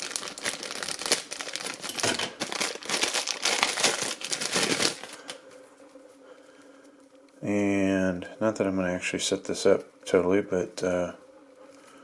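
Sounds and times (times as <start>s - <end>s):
packaging crinkling: 0.0s - 5.5s.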